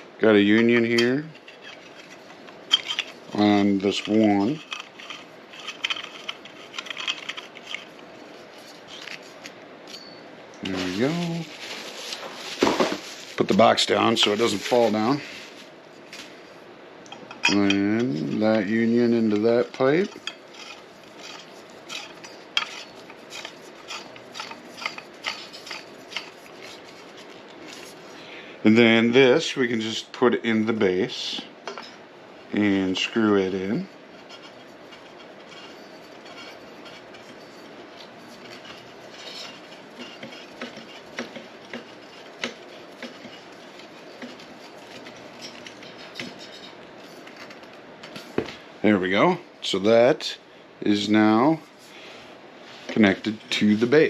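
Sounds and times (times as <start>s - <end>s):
pipe threads rubbing: 0.5s - 16.0s, 17.4s - 28.1s, 33.3s - 48.4s.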